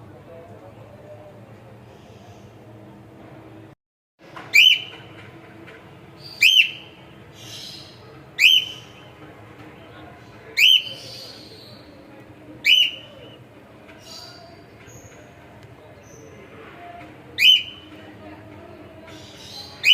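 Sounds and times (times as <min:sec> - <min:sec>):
cockatiel whistling: 0:04.5 - 0:04.9, 0:06.4 - 0:06.9, 0:08.4 - 0:08.9, 0:10.6 - 0:11.0, 0:12.6 - 0:13.4, 0:17.4 - 0:17.8.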